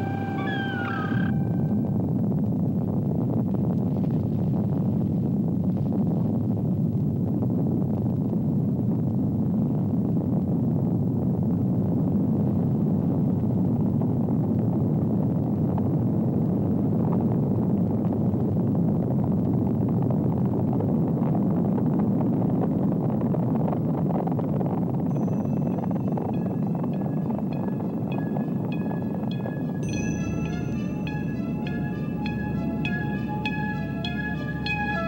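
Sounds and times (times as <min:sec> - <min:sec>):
steady low rumble: 0:00.0 - 0:35.0.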